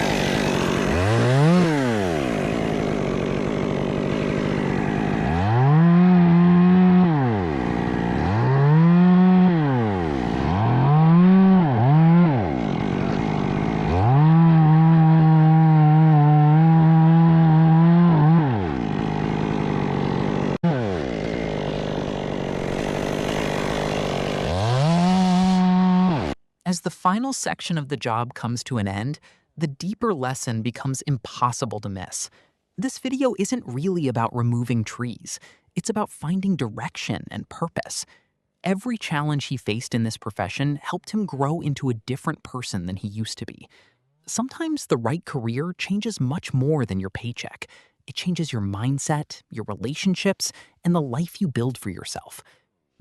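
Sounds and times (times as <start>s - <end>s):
chainsaw revving: 0.0s - 26.4s.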